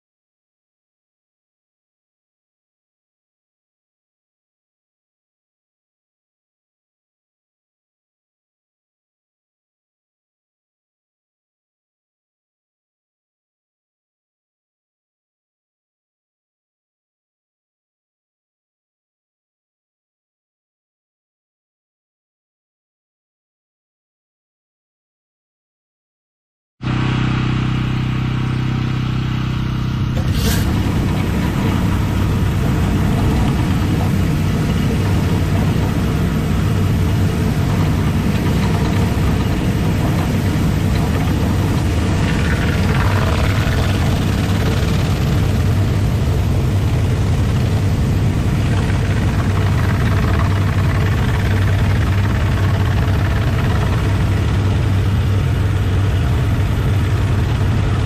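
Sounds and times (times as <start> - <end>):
pressure washer running: 26.8 - 58.0.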